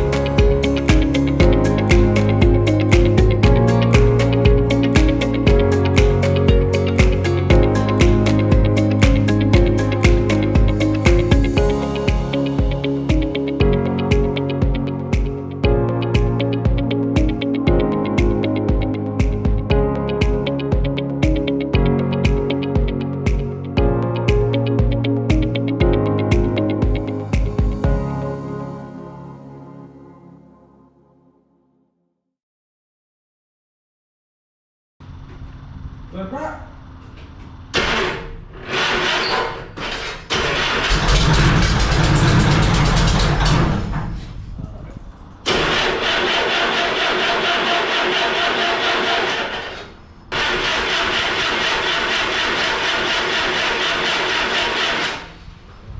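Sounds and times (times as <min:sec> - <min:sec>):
aircraft engine starting and running: 0:00.0 - 0:17.6, 0:36.8 - 0:44.4, 0:45.4 - 0:55.5
electronic music: 0:00.0 - 0:30.9.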